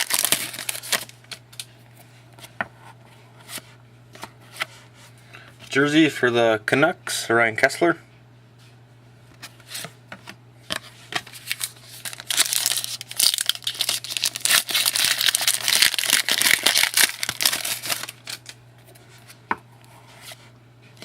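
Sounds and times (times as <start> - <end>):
wrapper crinkling and tearing: 0.0 - 1.6, 11.3 - 18.6.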